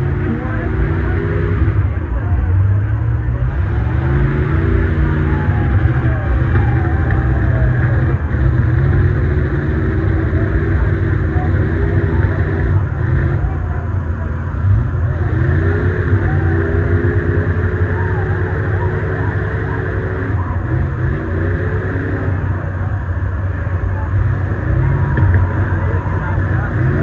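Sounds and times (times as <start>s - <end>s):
truck engines revving: 0.0s - 27.0s.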